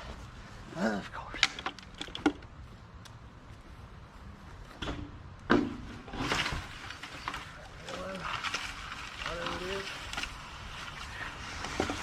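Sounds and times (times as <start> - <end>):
sharp knocks and clunks: 4.7 - 6.6.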